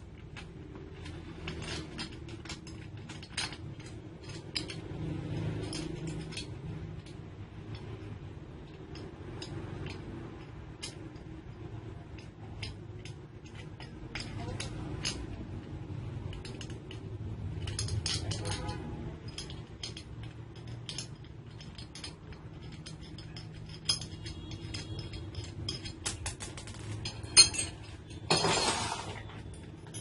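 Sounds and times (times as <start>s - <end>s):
metal parts clinking: 0.0s - 30.0s
scraping rustle: 20.6s - 29.4s.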